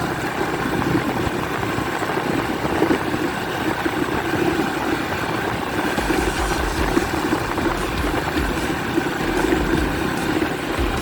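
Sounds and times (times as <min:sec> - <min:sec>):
motorcycle engine running: 0:00.0 - 0:11.0
low rumble: 0:05.6 - 0:11.0.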